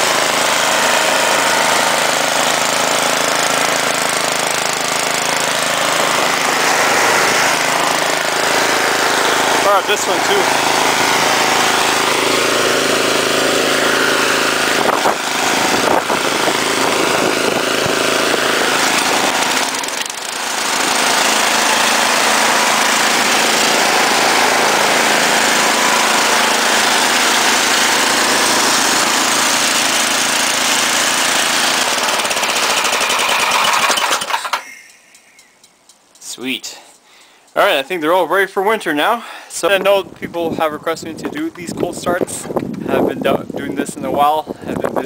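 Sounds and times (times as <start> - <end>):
snowblower engine running: 0.0 - 35.6.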